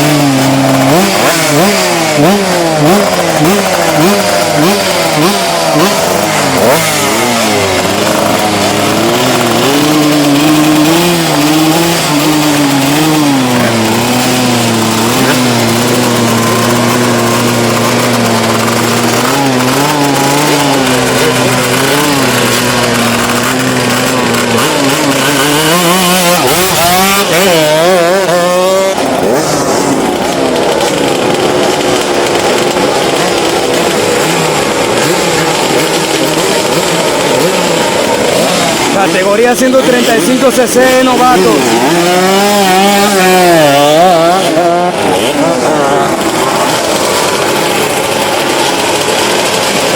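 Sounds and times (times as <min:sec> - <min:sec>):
motorcycle engine revving: 0:00.0 - 0:49.9.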